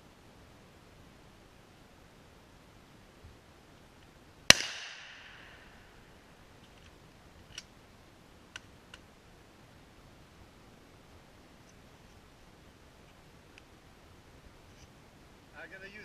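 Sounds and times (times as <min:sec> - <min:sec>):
gunshot with ringing echo: 0:04.5 - 0:05.8
gun handling clicks: 0:06.6 - 0:07.7.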